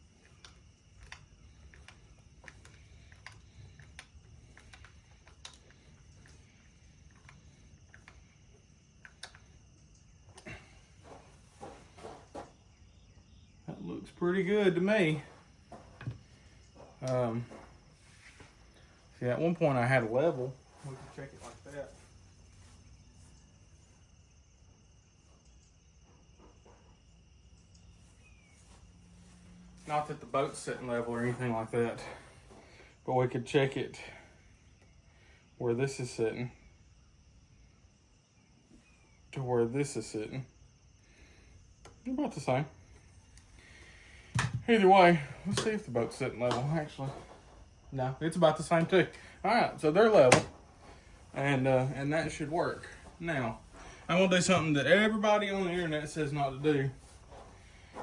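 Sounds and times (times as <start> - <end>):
faint cricket chirping: 0.0 - 58.0
faint small clicks and ticks: 0.2 - 8.3, 9.0 - 10.5.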